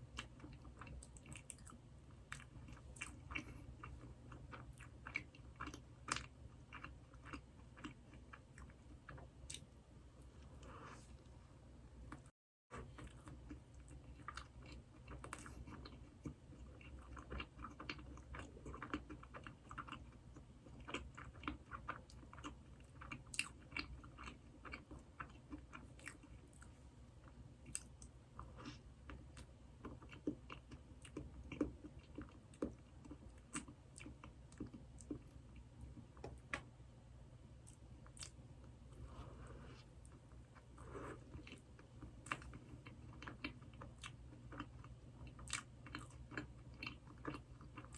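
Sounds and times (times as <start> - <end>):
faint low hum: 0.0 - 47.9
chewing mouth sounds: 0.2 - 9.6.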